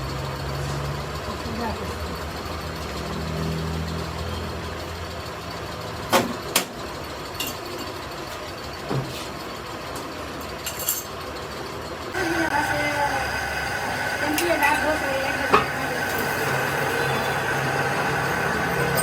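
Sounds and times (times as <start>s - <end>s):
low engine drone: 12.2s - 19.0s.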